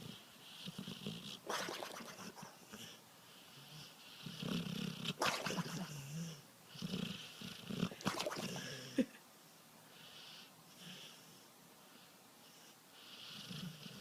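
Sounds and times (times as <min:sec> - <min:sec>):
dog making repeated sounds: 0:01.2 - 0:02.7, 0:05.0 - 0:06.1, 0:07.8 - 0:08.7.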